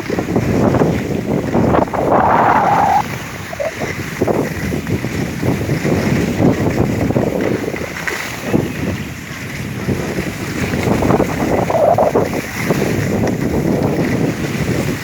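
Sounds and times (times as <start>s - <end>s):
wind buffeting microphone: 0.0s - 15.0s
skis scraping on snow: 0.1s - 8.4s.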